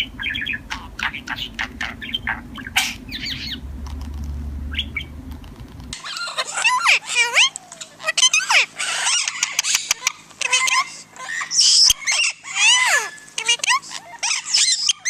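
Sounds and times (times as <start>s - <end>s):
bird chirping sharply: 0.0s - 3.7s, 4.7s - 5.2s
bird whistling: 0.0s - 3.7s, 4.7s - 5.2s, 6.0s - 15.0s
low hum: 0.0s - 11.2s.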